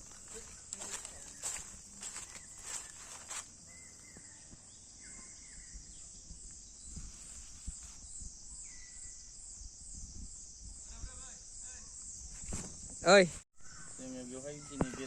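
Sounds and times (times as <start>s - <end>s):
pulsing insect chorus: 0.0s - 15.0s
whistled bird calls: 0.8s - 7.0s, 8.5s - 9.3s, 13.6s - 15.0s.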